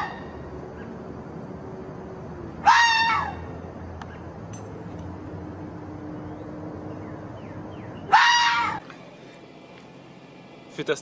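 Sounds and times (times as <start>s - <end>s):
high-pitched animal call: 2.6s - 3.5s, 8.1s - 8.8s.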